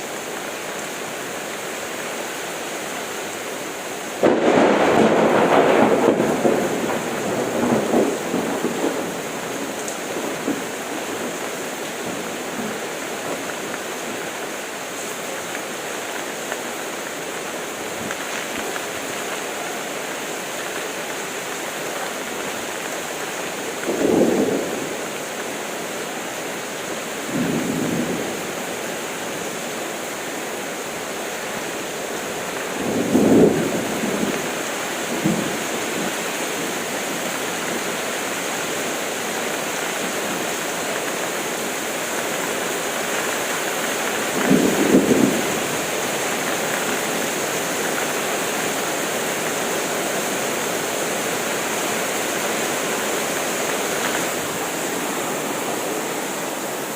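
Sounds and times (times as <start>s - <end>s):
heavy rain: 0.0s - 56.9s
thunder rumbles: 4.2s - 13.4s, 32.8s - 36.2s, 44.2s - 46.8s.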